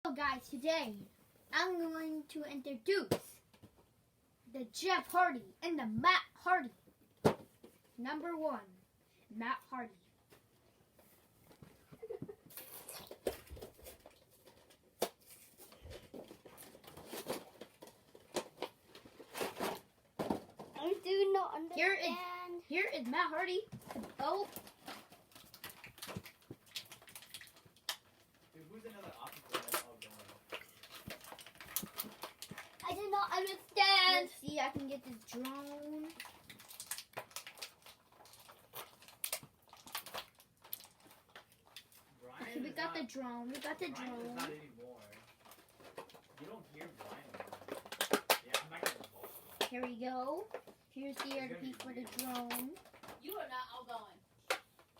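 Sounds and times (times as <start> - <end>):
plastic and cardboard packaging crinkling: 10.4 - 21.0, 23.6 - 42.7, 43.4 - 54.9.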